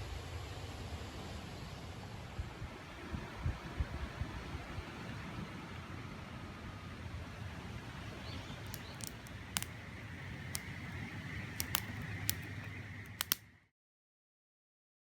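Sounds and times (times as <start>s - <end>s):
campfire crackling and popping: 8.6s - 13.5s.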